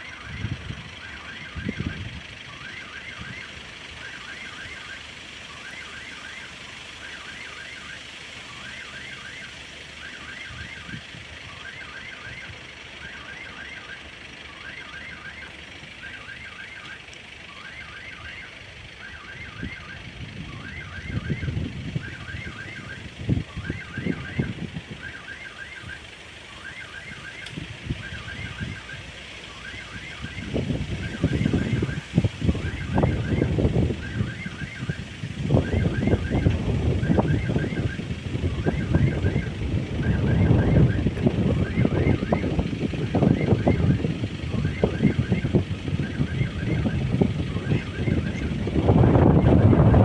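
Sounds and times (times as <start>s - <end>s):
level crossing warning chirps: 0.0s - 50.0s
passing train rumble and clatter: 36.4s - 44.6s.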